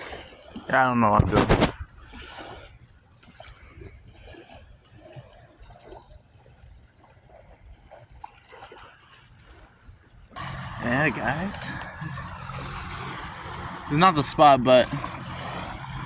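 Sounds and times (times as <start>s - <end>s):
surf: 0.0s - 6.0s, 7.4s - 16.0s
wind: 0.0s - 16.0s
bird's high whistle: 1.4s - 5.7s
short high bird chirps: 1.4s - 6.2s.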